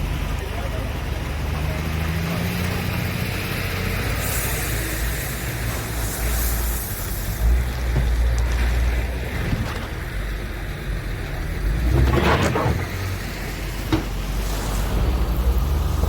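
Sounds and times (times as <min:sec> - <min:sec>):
diesel engine running: 0:00.0 - 0:16.0
gravel rushing scrape: 0:11.6 - 0:16.0.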